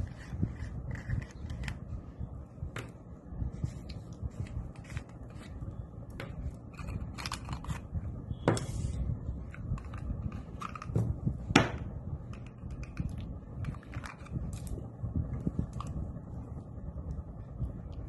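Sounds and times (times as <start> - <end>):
plastic torch being handled: 0.0 - 2.0, 2.8 - 7.9.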